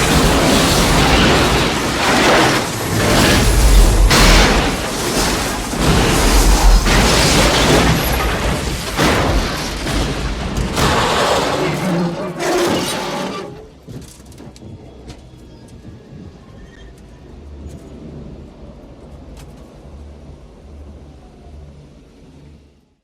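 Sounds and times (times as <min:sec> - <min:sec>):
heavy booming crashes: 0:00.0 - 0:13.7.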